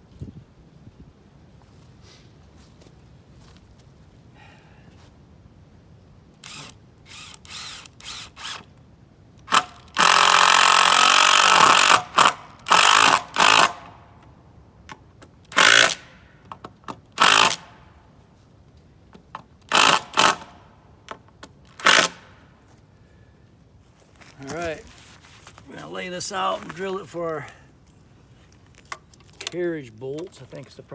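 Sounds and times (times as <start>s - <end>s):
power tool bursts: 6.4s - 8.6s, 9.5s - 14.0s, 15.5s - 16.2s, 17.2s - 17.8s, 19.7s - 20.6s, 21.7s - 22.4s.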